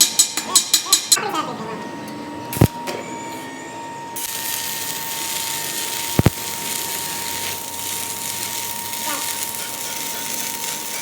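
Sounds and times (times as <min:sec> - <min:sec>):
high hum: 0:04.2 - 0:10.9
machine hissing: 0:04.2 - 0:11.0.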